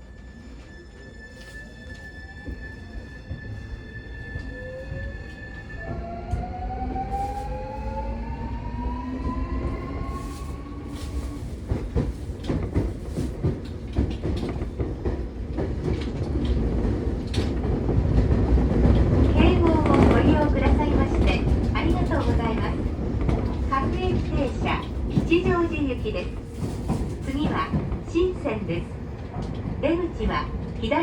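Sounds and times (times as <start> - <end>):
train wheel rumble: 1.4 - 31.0
rail-joint clatter: 11.2 - 28.2.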